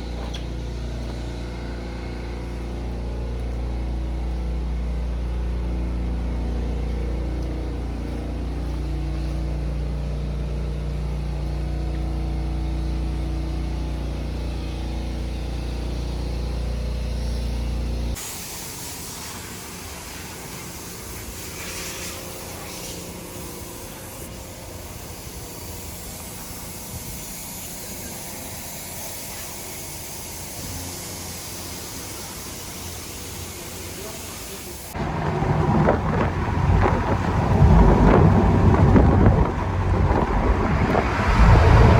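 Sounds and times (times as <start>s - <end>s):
car engine drone: 0.0s - 18.8s, 34.9s - 41.9s
hissing water spray: 13.7s - 35.0s.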